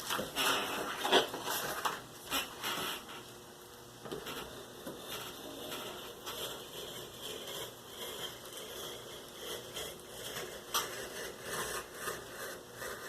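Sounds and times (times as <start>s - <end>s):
cardboard rustling and scraping: 0.0s - 3.3s.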